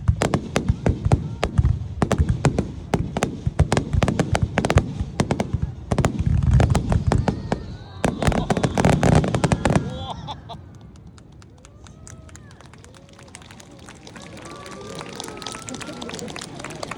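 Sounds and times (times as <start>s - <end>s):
deep fireworks booms: 0.0s - 10.4s
fireworks cracks and bangs: 0.0s - 16.9s.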